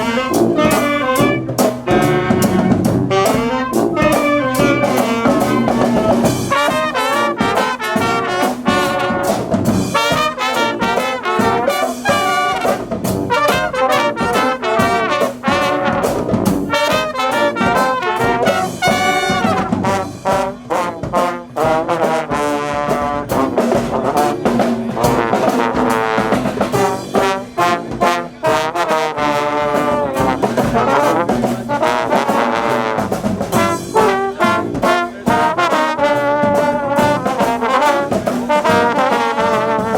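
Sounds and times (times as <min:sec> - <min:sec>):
brass marching band playing: 0:00.0 - 0:39.9
steady drumming: 0:00.0 - 0:39.9.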